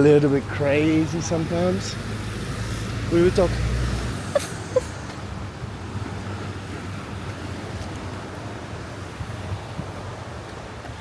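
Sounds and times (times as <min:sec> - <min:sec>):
wind on microphone: 0:04.0 - 0:11.0.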